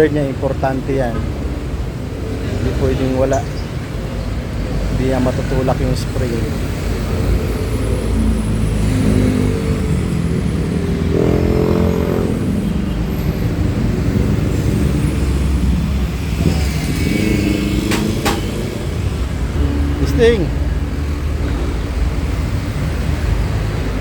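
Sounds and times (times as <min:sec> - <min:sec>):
road traffic rumble: 0:00.0 - 0:24.0
vehicle engine passing: 0:05.0 - 0:24.0.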